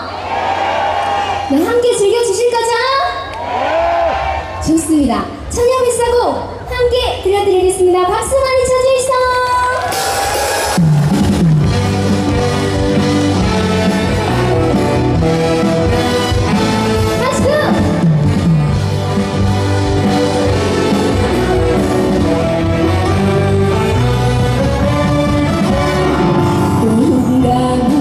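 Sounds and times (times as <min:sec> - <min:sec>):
live band playing: 0:08.4 - 0:28.0.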